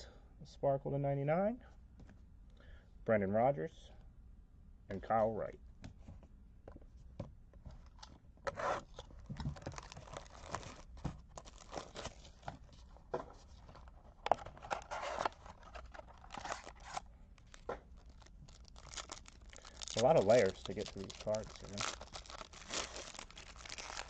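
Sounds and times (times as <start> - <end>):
plastic wrapping tearing and crinkling: 9.6 - 12.4, 14.6 - 24.0.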